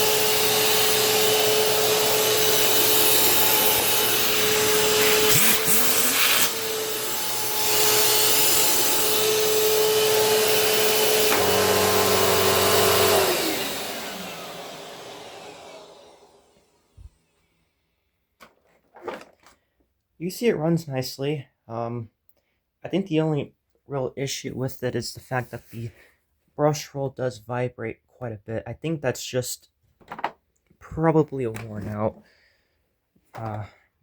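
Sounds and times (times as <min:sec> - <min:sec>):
vacuum cleaner running: 0:00.0 - 0:17.2
vacuum motor winding down: 0:00.0 - 0:17.2.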